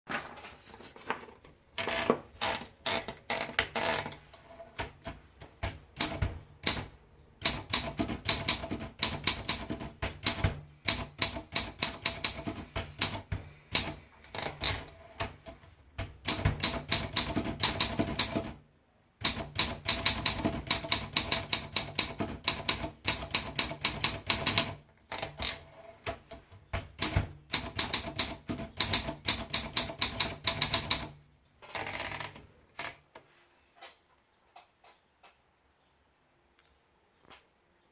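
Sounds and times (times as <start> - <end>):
typewriter key strikes: 19.2 - 25.6.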